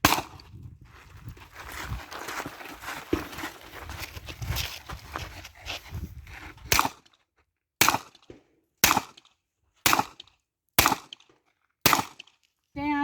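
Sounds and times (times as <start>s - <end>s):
handgun shots: 0.0s - 0.3s, 7.8s - 9.3s, 9.9s - 11.2s, 11.9s - 12.3s
rustling handling noise: 0.8s - 6.7s.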